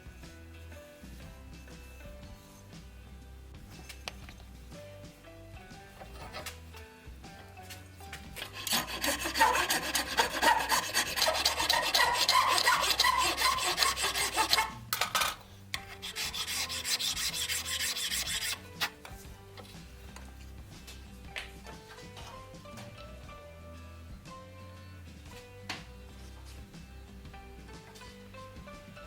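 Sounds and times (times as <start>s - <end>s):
rasp scraping wood: 6.0s - 6.6s, 8.3s - 19.9s.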